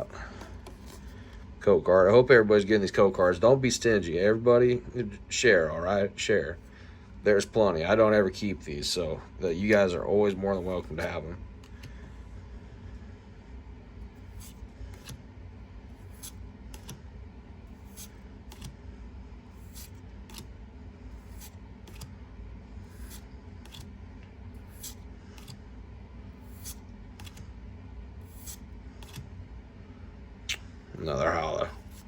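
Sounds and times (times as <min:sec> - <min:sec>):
low steady hum: 0:00.0 - 0:32.0
trading cards swishing: 0:00.6 - 0:01.2, 0:14.2 - 0:15.2, 0:15.9 - 0:17.0, 0:17.7 - 0:18.8, 0:19.5 - 0:20.5, 0:21.1 - 0:22.1, 0:22.8 - 0:23.9, 0:24.6 - 0:25.6, 0:26.4 - 0:27.5, 0:28.2 - 0:29.3, 0:31.7 - 0:32.0.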